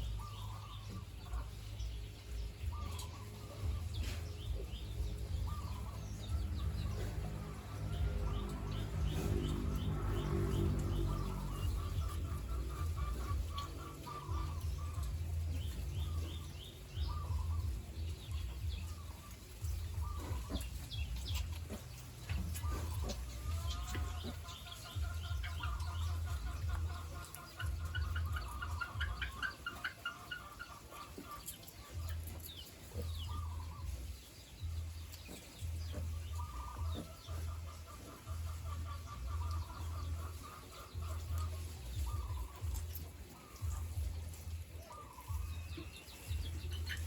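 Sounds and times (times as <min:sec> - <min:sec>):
higher clucking calls: 0:20.0 - 0:32.2.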